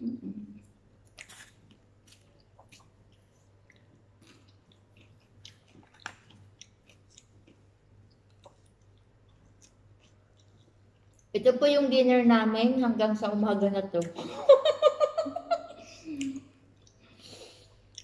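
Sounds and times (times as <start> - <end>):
person chewing: 0.5 - 11.3, 16.0 - 18.0.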